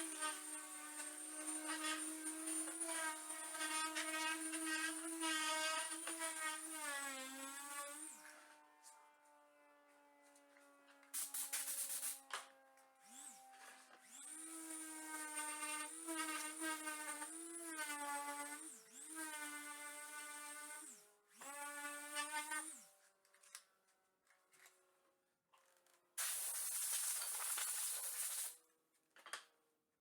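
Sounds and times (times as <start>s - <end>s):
router cutting wood: 0.0s - 9.4s, 12.9s - 22.9s
cnc router spindle whining: 13.0s - 20.7s.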